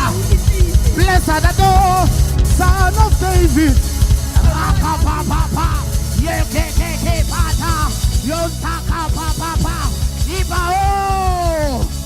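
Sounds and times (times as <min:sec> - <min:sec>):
drum and bass beat: 0:00.0 - 0:12.0
quick repeated short notes: 0:00.0 - 0:12.0
worship band music: 0:00.0 - 0:12.0.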